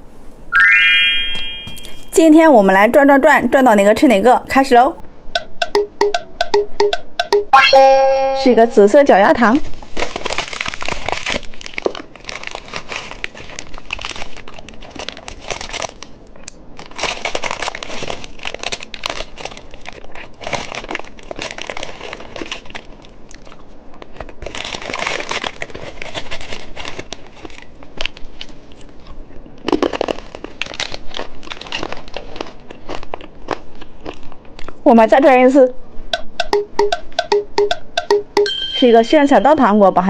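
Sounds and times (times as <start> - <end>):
plastic wrapper crinkling: 9.5 - 34.8.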